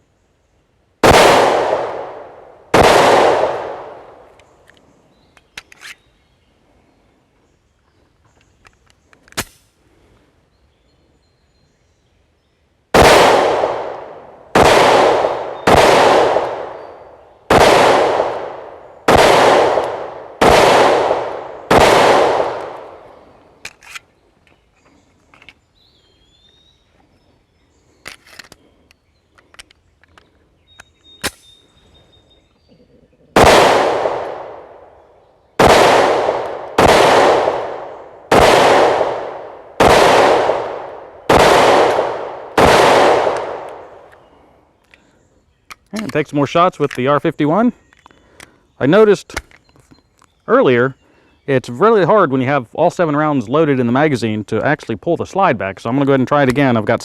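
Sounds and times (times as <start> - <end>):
pistol shots with echo: 1.0 - 4.3, 12.9 - 23.3, 33.4 - 35.0, 35.6 - 44.1
gun handling clicks and knocks: 4.2 - 6.1, 7.8 - 9.8, 23.6 - 25.6, 27.9 - 31.6, 43.3 - 47.2, 47.8 - 48.6, 49.3 - 50.4, 56.3 - 57.0.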